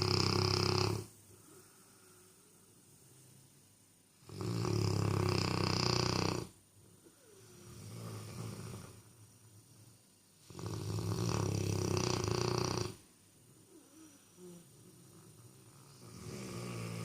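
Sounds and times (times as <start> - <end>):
dog snoring: 0.0 - 1.1, 4.2 - 6.6, 7.2 - 9.1, 10.4 - 13.0, 13.7 - 17.0.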